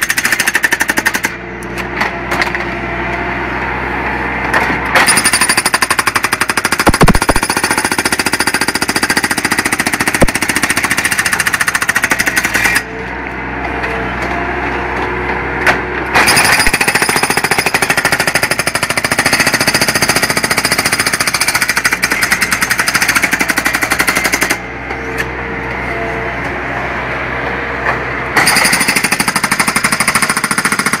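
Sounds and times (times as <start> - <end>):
skid steer engine running: 0.0 - 31.0
hydraulic breaker hammering: 4.9 - 12.9, 15.6 - 24.7, 28.4 - 31.0.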